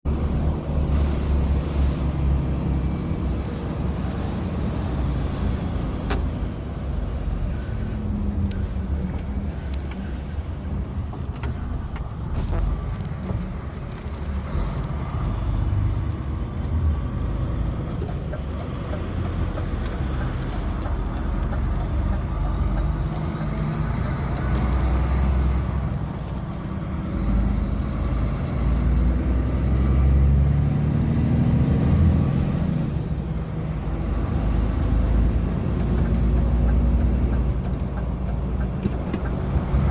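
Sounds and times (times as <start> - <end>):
diesel truck engine running: 0.1 - 30.4.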